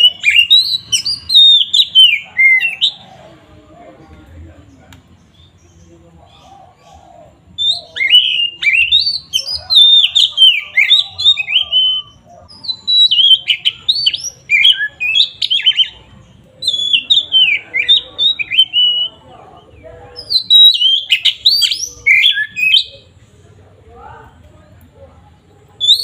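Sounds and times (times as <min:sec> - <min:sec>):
bird singing whistled phrases: 0:00.0 - 0:03.0, 0:07.6 - 0:16.0, 0:16.6 - 0:19.2, 0:20.2 - 0:23.0, 0:25.8 - 0:26.0.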